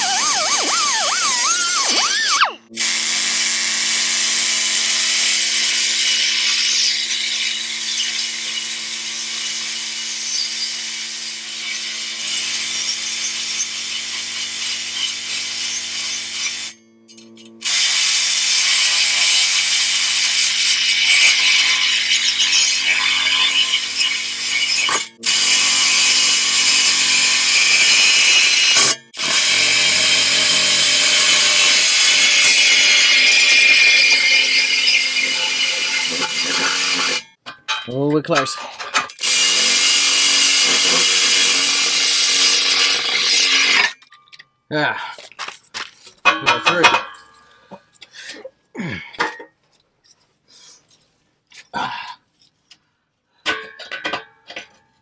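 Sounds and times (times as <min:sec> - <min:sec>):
motor hum: 0:00.0 - 0:02.7
cut-off wheel grinding steel pipe: 0:00.0 - 0:16.8, 0:17.6 - 0:37.4, 0:38.4 - 0:44.1.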